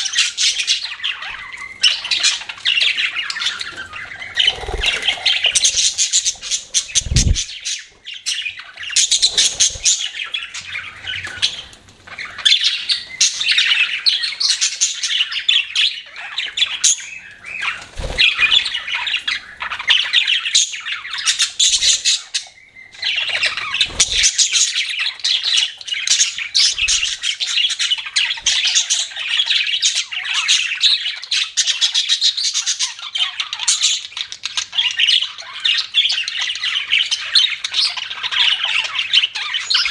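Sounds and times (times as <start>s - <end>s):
budgerigars chattering: 0.0s - 39.9s
dull low thumps: 6.9s - 7.5s.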